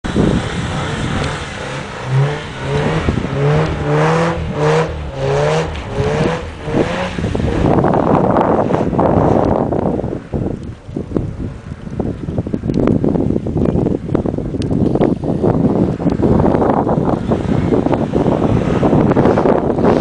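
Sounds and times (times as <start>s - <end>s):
car engine revving: 0.0s - 10.4s, 16.0s - 20.0s
loud even rushing noise: 0.0s - 11.8s, 15.5s - 20.0s.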